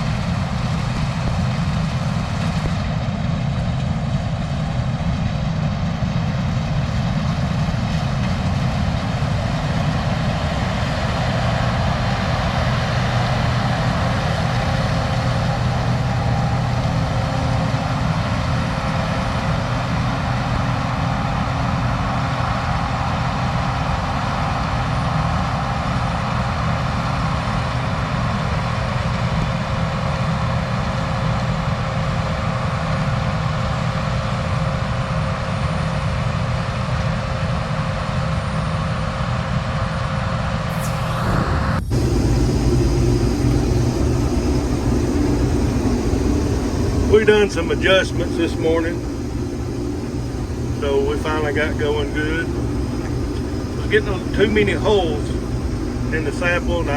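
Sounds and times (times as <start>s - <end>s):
combine harvester threshing drone: 40.7s - 56.9s.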